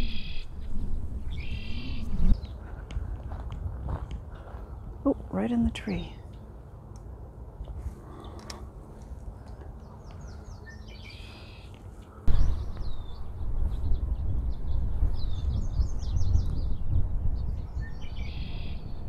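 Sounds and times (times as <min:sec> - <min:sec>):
songbirds chirping and trilling: 0:00.0 - 0:03.0, 0:04.2 - 0:19.0
loud low rumble: 0:12.3 - 0:19.0.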